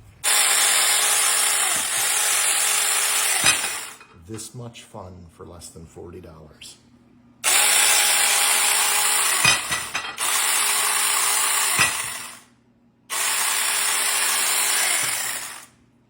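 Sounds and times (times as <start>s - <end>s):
small chainsaw running: 0.2s - 4.0s, 7.4s - 12.4s, 13.1s - 15.8s.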